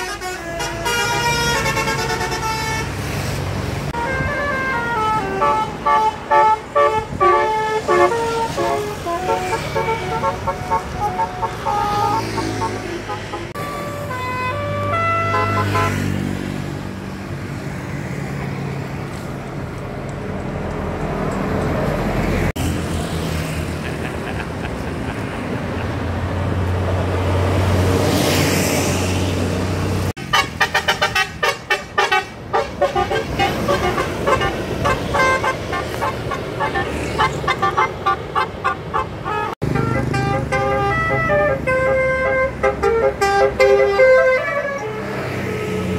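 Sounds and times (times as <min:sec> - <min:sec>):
musical bus horn: 0:00.0 - 0:16.3, 0:30.2 - 0:45.9
heavy vehicle engine passing: 0:00.0 - 0:31.0, 0:32.4 - 0:45.9
road noise: 0:00.0 - 0:45.9
pulsing horn tones: 0:04.0 - 0:16.1, 0:30.3 - 0:45.9.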